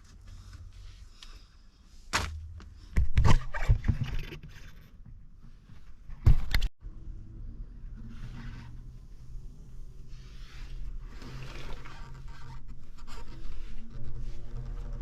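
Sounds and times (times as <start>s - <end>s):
knocks and scrapes: 2.1s - 6.7s.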